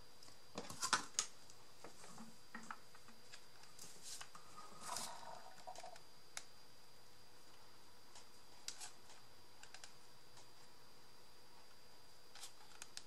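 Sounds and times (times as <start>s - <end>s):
paper pieces clicking and tapping: 12.3s - 13.0s.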